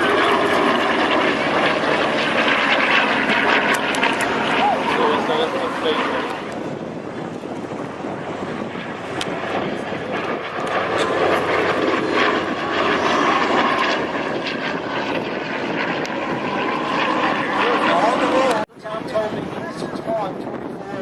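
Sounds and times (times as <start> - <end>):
propeller airplane flying by: 0.0 - 21.0.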